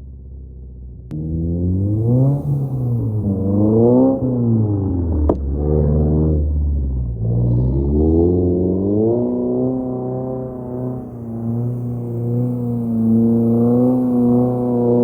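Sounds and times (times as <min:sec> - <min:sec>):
car engine revving: 0:01.1 - 0:15.0
sharp exhaust crack: 0:01.8 - 0:04.9, 0:09.8 - 0:15.0.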